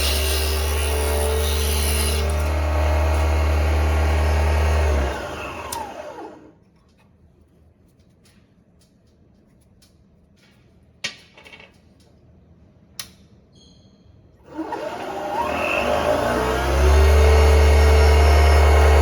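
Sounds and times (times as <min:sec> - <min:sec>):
table saw motor whining: 0:00.0 - 0:06.5, 0:14.5 - 0:19.0.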